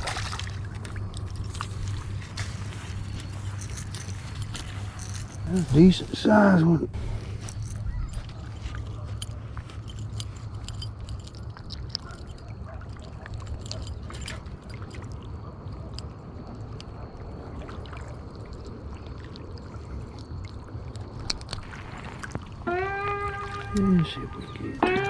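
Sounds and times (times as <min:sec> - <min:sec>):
water splashing and gurgling: 0:00.0 - 0:08.7, 0:11.2 - 0:25.0
steady low rumble: 0:00.0 - 0:11.5.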